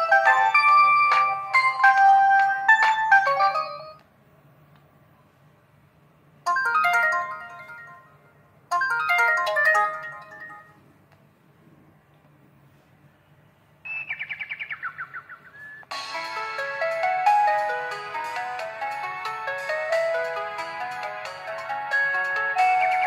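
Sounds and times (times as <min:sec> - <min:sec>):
synthesized phone ringtones: 0:00.0 - 0:04.0, 0:06.5 - 0:10.8.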